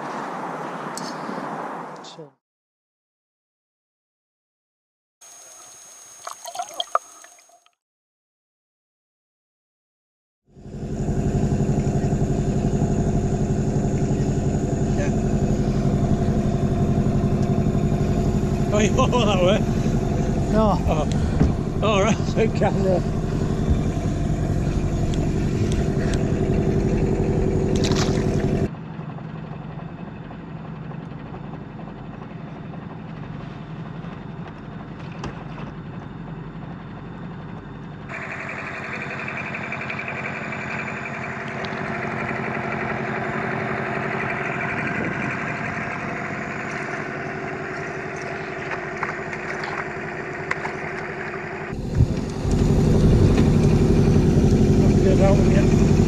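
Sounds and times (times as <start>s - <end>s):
boat engine running: 10.5s - 56.0s.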